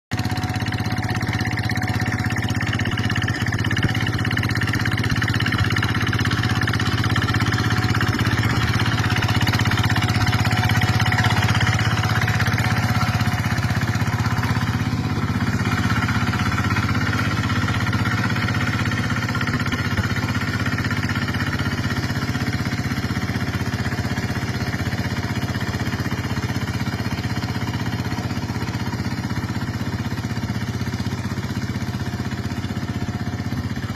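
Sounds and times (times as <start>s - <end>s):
tractor engine running: 0.1s - 33.9s.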